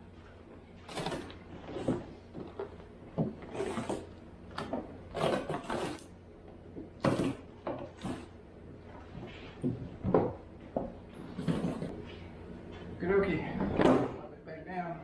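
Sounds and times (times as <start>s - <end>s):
knocks scrapes and rustles: 0.7s - 6.1s, 6.8s - 12.9s.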